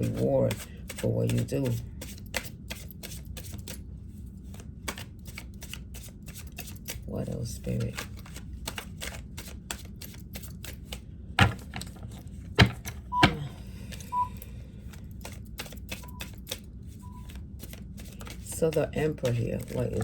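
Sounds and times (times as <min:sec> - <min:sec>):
cards being shuffled: 0:00.0 - 0:03.8, 0:04.4 - 0:13.1, 0:14.8 - 0:20.0.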